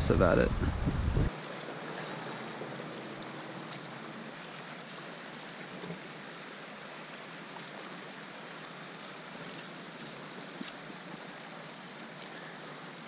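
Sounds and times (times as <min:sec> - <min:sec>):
creek water flowing: 0:00.0 - 0:13.0
faint ticks: 0:08.9 - 0:10.8.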